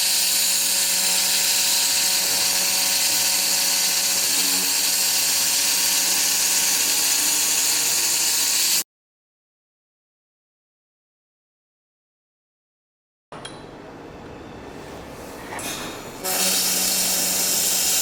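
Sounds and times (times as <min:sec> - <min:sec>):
laser welder hissing: 0:00.0 - 0:08.8, 0:16.2 - 0:18.0.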